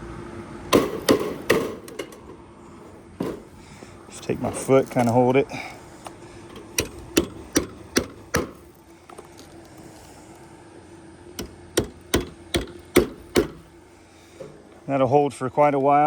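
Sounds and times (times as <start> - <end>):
hammer striking nails: 0.7 - 2.0, 6.8 - 8.7, 11.4 - 13.7.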